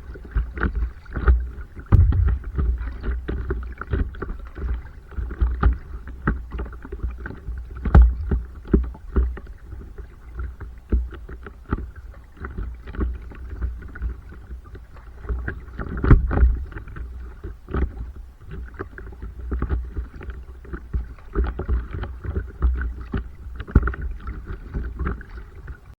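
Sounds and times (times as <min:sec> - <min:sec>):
paddle strokes splashing water: 0:00.0 - 0:25.9
steady low rumble: 0:01.9 - 0:03.5.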